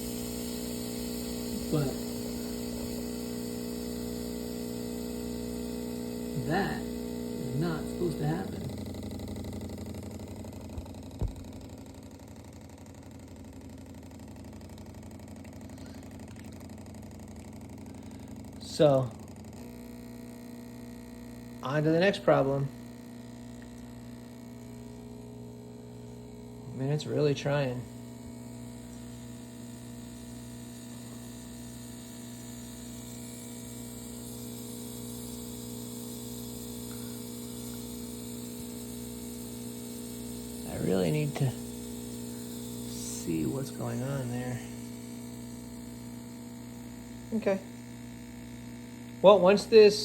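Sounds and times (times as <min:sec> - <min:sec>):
boiling water spraying: 0:00.0 - 0:12.1, 0:23.6 - 0:50.0
espresso machine pump buzzing: 0:00.0 - 0:50.0.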